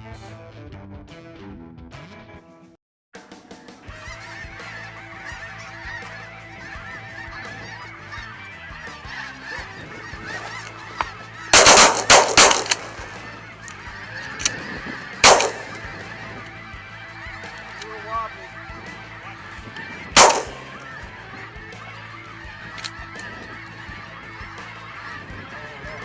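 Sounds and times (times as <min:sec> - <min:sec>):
flock of geese honking: 0:03.8 - 0:26.0
shotgun shots: 0:11.6 - 0:13.4, 0:15.2 - 0:16.1, 0:20.2 - 0:20.9.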